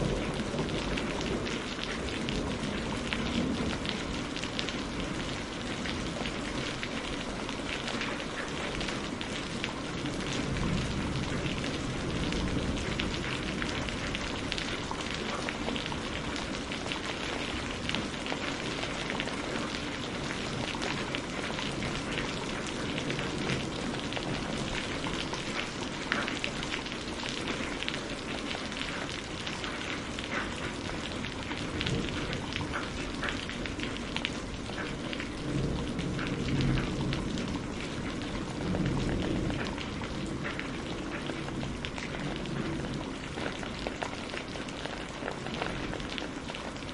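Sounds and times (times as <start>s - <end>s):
rain drops pattering: 0.0s - 46.9s.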